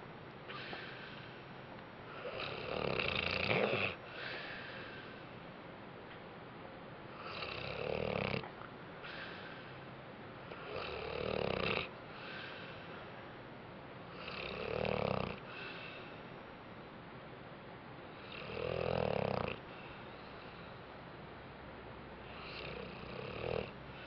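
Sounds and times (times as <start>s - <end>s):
dog snoring: 2.1s - 4.6s, 7.2s - 8.5s, 10.5s - 12.7s, 14.1s - 16.0s, 18.2s - 19.9s, 22.3s - 24.0s.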